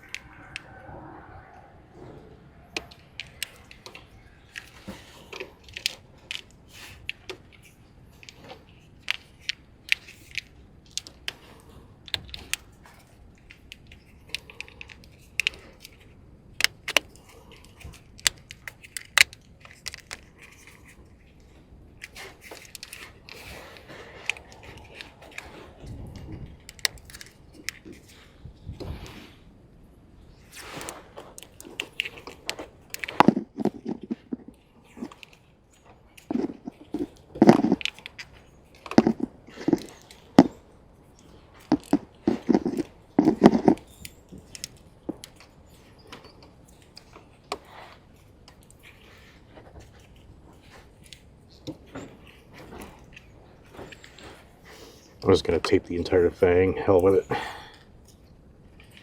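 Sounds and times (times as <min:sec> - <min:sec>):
plastic wire loom clicking: 0:02.8 - 0:21.0.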